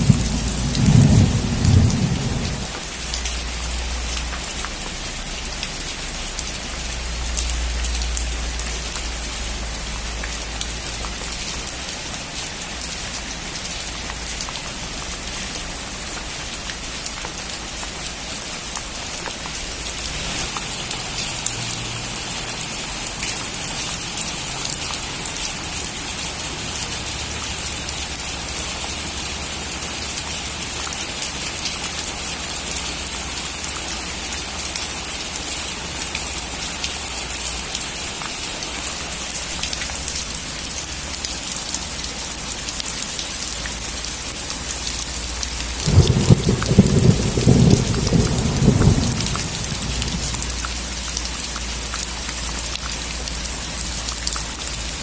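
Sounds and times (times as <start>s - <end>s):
low rumble of thunder: 0.0s - 2.8s, 45.8s - 50.8s
heavy rain on a metal roof: 0.0s - 55.0s.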